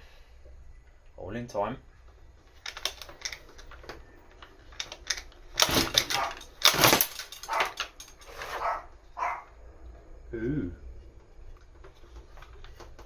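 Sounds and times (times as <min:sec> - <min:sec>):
handling clicks and knocks: 0:02.0 - 0:08.8
small engine cranking bursts: 0:04.8 - 0:08.5.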